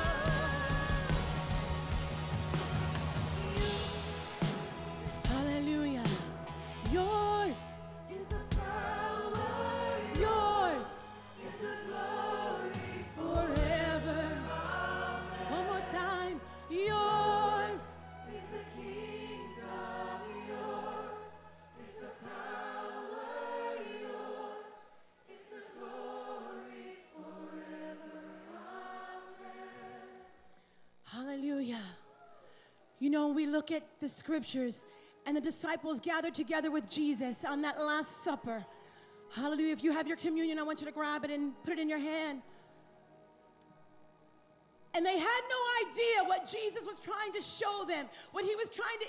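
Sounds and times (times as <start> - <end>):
choir singing a slow worship song: 0.0 - 31.8.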